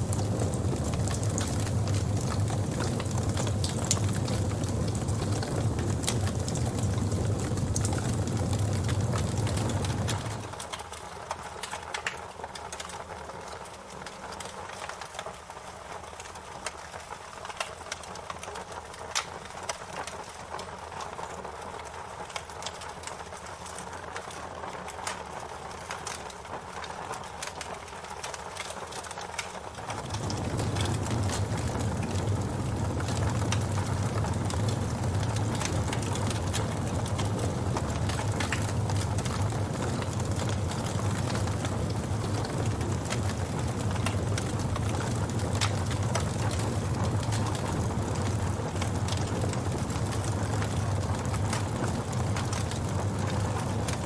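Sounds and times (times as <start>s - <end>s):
wood fire crackling and popping: 0.0s - 54.0s
low rumble: 29.9s - 44.7s.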